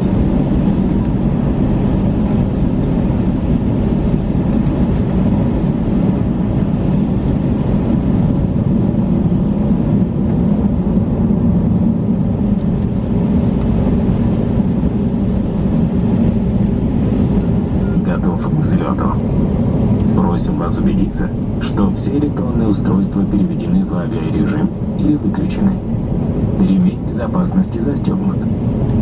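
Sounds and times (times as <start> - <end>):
airplane cabin engine rumble: 0.0 - 29.0.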